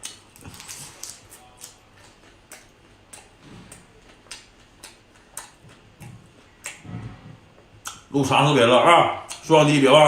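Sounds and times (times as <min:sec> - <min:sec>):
soft chewing thuds: 0:01.6 - 0:08.1
wet mouth clicks and smacks: 0:02.5 - 0:06.8, 0:07.8 - 0:08.1.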